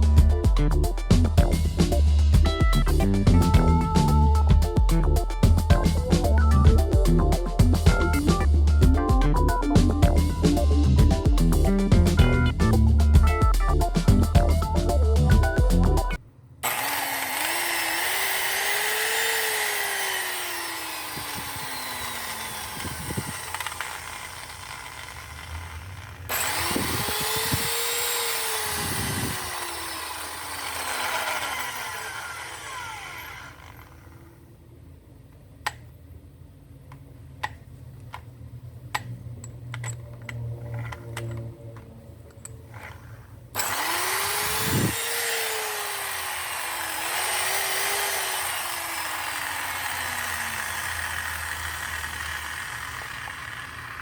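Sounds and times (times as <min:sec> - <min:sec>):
electric drill running: 0:16.6 - 0:34.3, 0:43.6 - 0:54.0.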